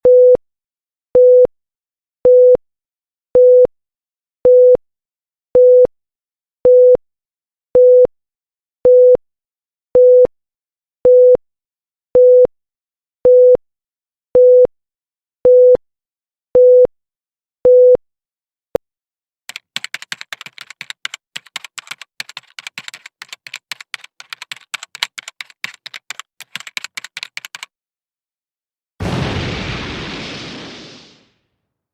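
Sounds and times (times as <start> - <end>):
rapid typing clicks: 19.5 - 27.7.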